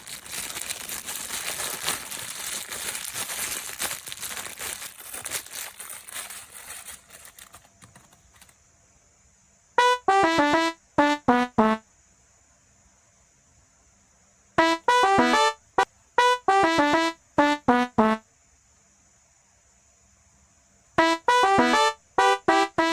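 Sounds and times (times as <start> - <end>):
packaging crinkling: 0.0 - 8.6
trumpet-like musical phrases: 21.0 - 22.9.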